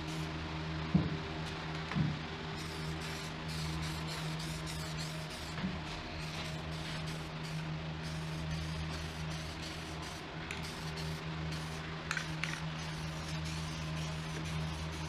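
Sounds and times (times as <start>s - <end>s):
steady low hum: 0.0s - 15.0s
spray can hissing: 2.6s - 5.6s, 6.2s - 15.0s.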